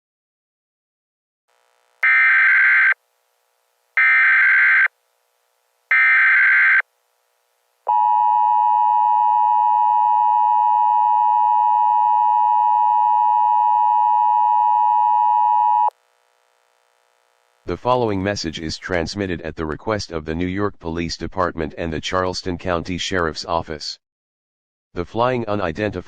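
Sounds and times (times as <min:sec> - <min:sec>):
data tone bursts: 0:02.0 - 0:03.0, 0:04.0 - 0:04.9, 0:05.9 - 0:06.8
steady attention signal tone: 0:02.0 - 0:03.0, 0:04.0 - 0:04.9, 0:05.9 - 0:06.9, 0:07.9 - 0:15.9.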